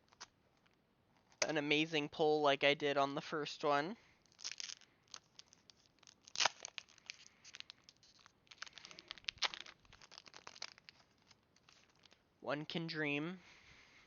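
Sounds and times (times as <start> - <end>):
foil wrapper tearing and crinkling: 4.2 - 12.2.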